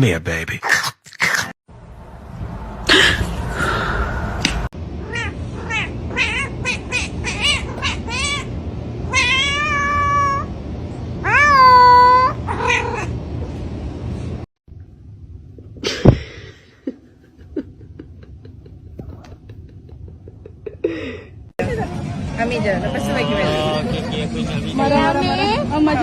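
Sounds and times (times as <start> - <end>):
cat meowing: 5.0 - 8.5, 9.1 - 10.5, 11.2 - 13.2.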